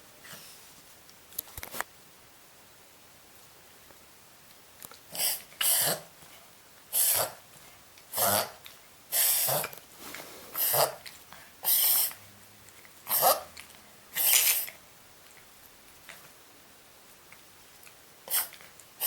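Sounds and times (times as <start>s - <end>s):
dog reverse sneezing: 5.1s - 6.1s, 6.9s - 7.4s, 8.1s - 11.0s, 11.6s - 12.2s, 14.1s - 14.8s, 18.3s - 18.6s.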